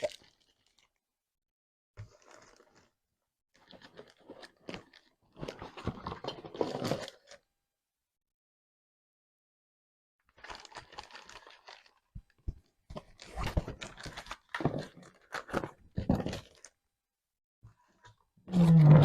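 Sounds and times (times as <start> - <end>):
packaging crackling and rustling: 10.3 - 16.8.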